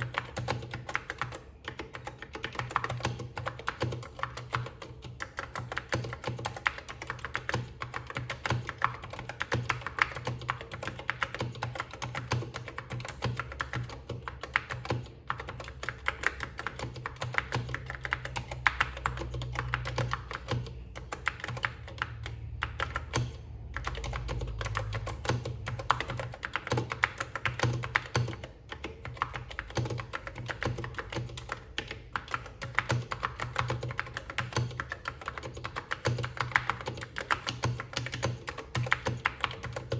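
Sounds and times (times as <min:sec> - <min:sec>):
typing on a keyboard: 0:00.0 - 0:39.9.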